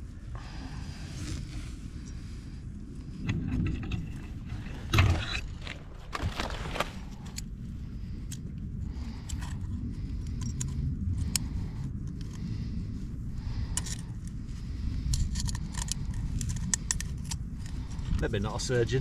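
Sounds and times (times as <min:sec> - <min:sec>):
wind rumbling on microphone: 0:00.0 - 0:19.0
metallic clicks and rattles: 0:15.1 - 0:18.2.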